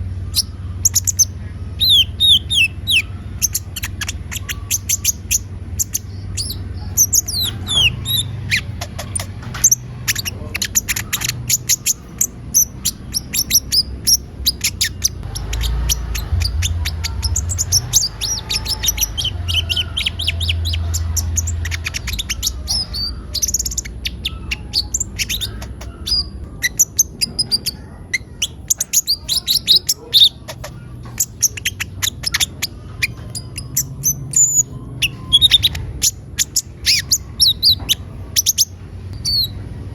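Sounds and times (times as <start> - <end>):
low rumble: 0.0 - 26.6
bird singing high chirps and trills: 0.0 - 39.8.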